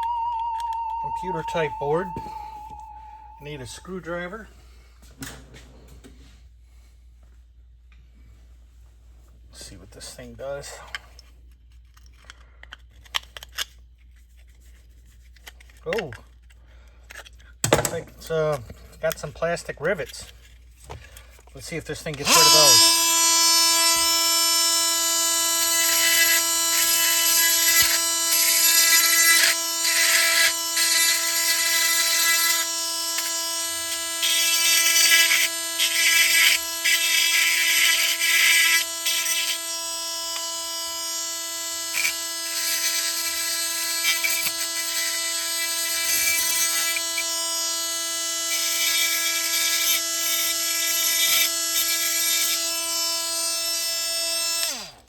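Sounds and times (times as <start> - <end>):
oscillating multi-tool humming: 0.0 - 3.9, 22.2 - 55.0
blade scraping plastic: 22.1 - 40.6.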